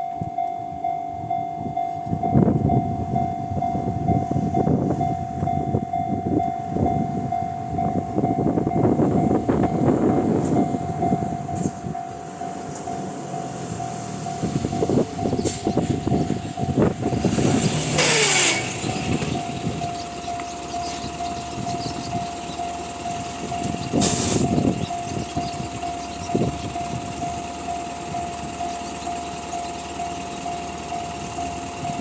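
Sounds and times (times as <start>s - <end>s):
electric train passing: 0.0s - 32.0s
level crossing alarm ringing: 0.0s - 32.0s
loud rushing bursts: 13.2s - 24.8s.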